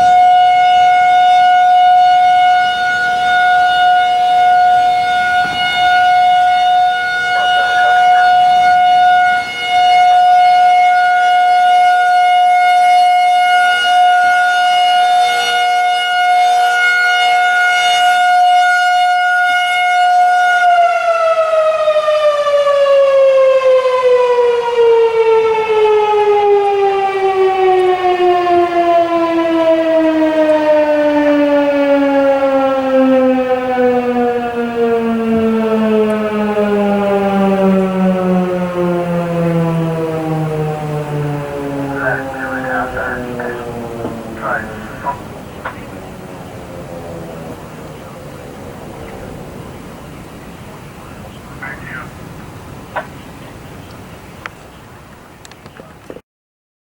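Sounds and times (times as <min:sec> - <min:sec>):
warning siren winding down: 0:00.0 - 0:50.9.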